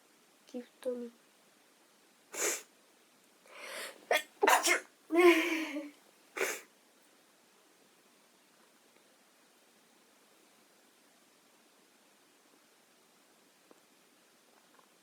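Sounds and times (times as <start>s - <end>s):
woman sneezing: 2.4s - 2.6s, 3.7s - 6.6s
woman breathing in sharply: 3.5s - 4.0s.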